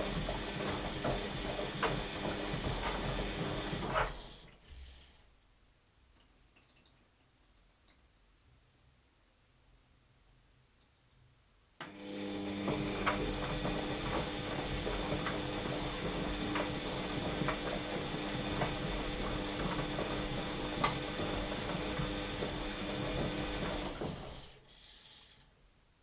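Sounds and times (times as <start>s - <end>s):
washing machine motor hum: 0.0s - 4.6s, 11.8s - 24.7s.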